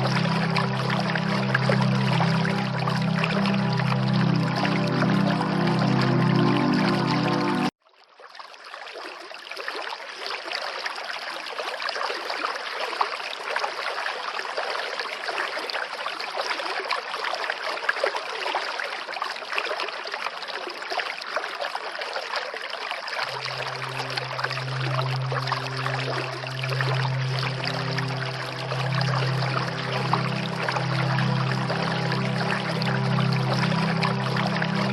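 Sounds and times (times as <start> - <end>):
soft music with bass note: 0.0 - 7.7, 23.3 - 34.9
water rushing: 0.0 - 7.7, 22.8 - 34.9.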